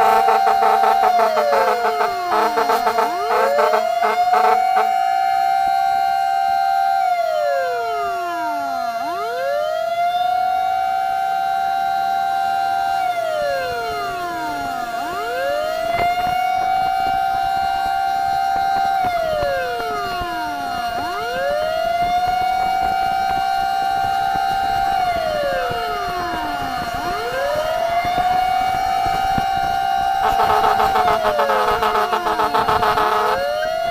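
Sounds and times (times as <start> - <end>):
fire truck siren wailing: 0.0 - 33.9
steady siren tone: 0.0 - 33.9.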